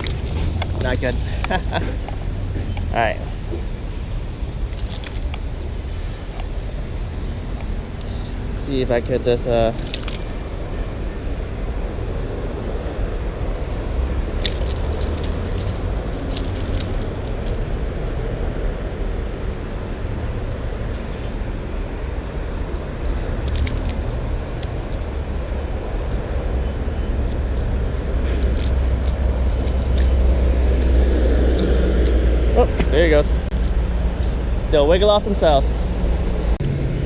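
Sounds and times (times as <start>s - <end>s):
handling clicks and rattles: 0.0s - 2.2s, 4.7s - 5.5s, 9.6s - 10.6s, 14.4s - 17.9s, 22.5s - 30.3s, 31.4s - 33.6s
low outdoor rumble: 0.0s - 37.0s.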